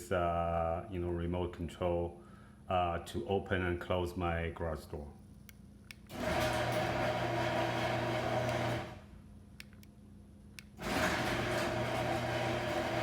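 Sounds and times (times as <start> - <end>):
garage door opener motor humming: 6.1 - 9.2, 10.7 - 13.0.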